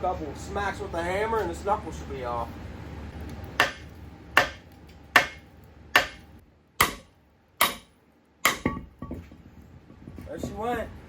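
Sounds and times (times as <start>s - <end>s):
hammer striking steel: 3.6s - 4.6s, 5.2s - 5.4s, 6.0s - 9.2s.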